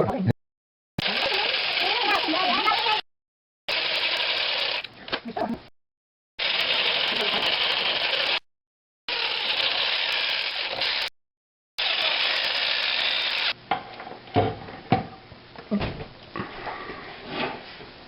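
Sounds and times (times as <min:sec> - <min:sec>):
electric jigsaw cutting: 0:01.0 - 0:03.0, 0:03.7 - 0:04.9, 0:06.4 - 0:08.4, 0:09.1 - 0:11.1, 0:11.8 - 0:13.6.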